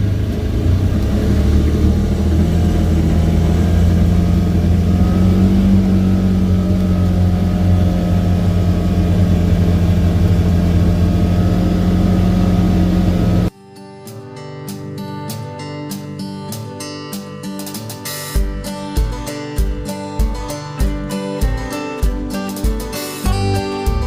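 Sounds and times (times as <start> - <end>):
vehicle engine droning inside cab: 0.0 - 13.5.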